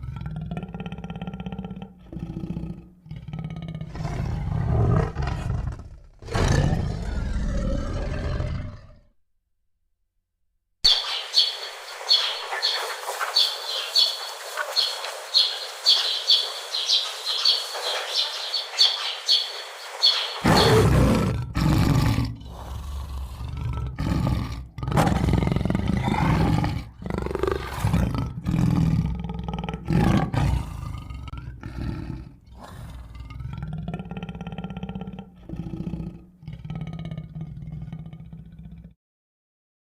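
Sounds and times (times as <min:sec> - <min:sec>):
big cat roaring and growling: 0:00.0 - 0:09.1, 0:20.4 - 0:39.0
bird chirping rapidly: 0:10.9 - 0:20.9.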